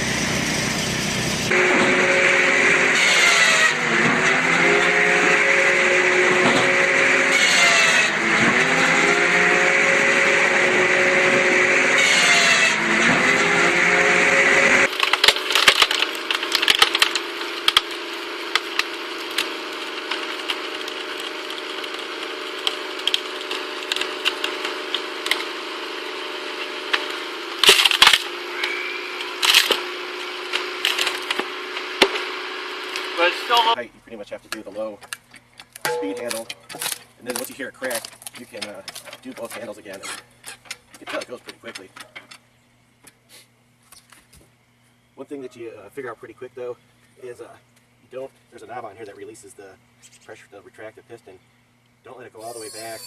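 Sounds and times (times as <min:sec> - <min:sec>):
engine running under load: 0:00.0 - 0:33.8
wood cracking and splintering: 0:14.8 - 0:33.2, 0:34.6 - 0:42.4
faint steady hum: 0:42.2 - 0:52.9.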